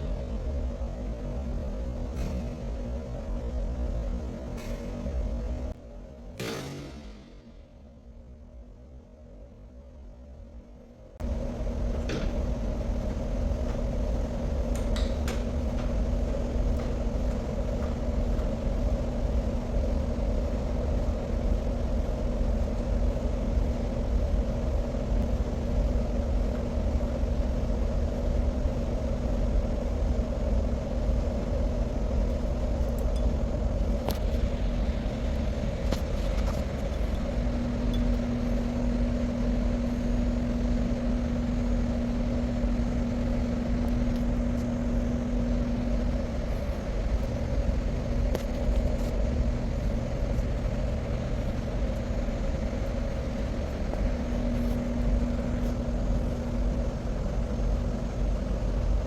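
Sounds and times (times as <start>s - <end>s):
constant hum: 0.0s - 59.0s
low mechanical rumble: 0.0s - 59.0s.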